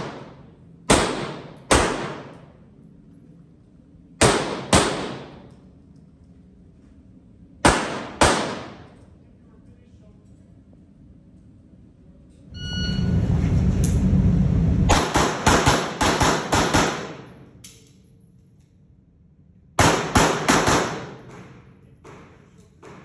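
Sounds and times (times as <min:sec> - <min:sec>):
pistol shots: 0:00.0 - 0:02.4, 0:04.2 - 0:05.5, 0:07.6 - 0:08.9, 0:14.9 - 0:17.4, 0:19.8 - 0:22.2
low rumble: 0:10.4 - 0:16.1
shot timer beep: 0:12.5 - 0:13.2.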